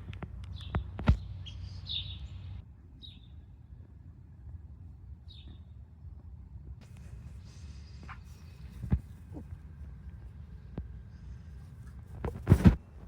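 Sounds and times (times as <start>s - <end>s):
small birds chirping: 0.0s - 3.6s, 5.2s - 5.8s, 6.8s - 11.8s.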